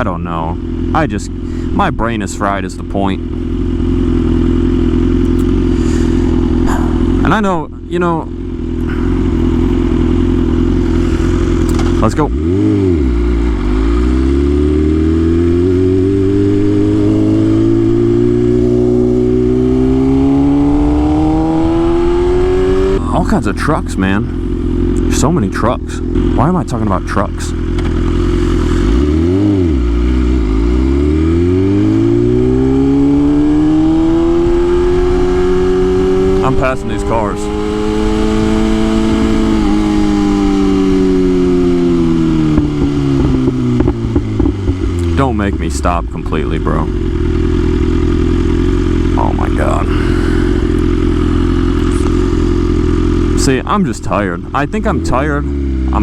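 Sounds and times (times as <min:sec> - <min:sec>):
motorcycle engine accelerating: 0:00.0 - 0:56.0
engine pops: 0:27.6 - 0:28.2, 0:42.4 - 0:46.4
wind rush: 0:33.9 - 0:45.2.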